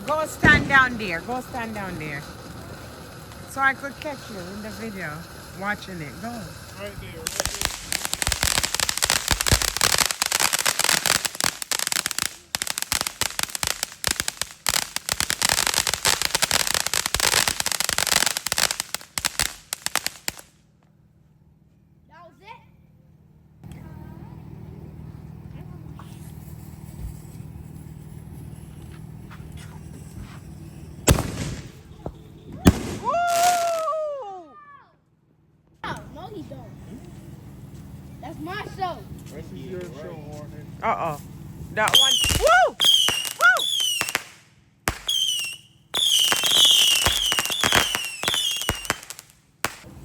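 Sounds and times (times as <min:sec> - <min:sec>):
firework bang: 0:00.0 - 0:20.4, 0:30.1 - 0:33.9, 0:41.9 - 0:50.0
steady low hum: 0:00.0 - 0:33.3, 0:35.1 - 0:42.8.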